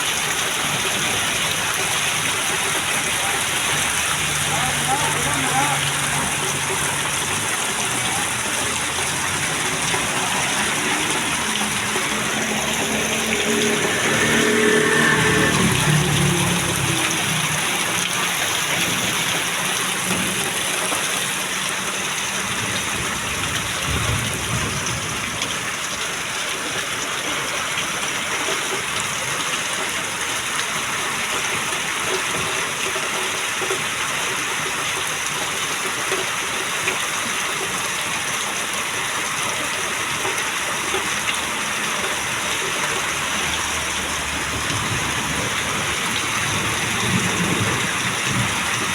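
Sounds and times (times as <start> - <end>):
heavy rain pouring: 0.0 - 48.9
water gushing: 0.0 - 48.9
engine passing: 3.4 - 20.4.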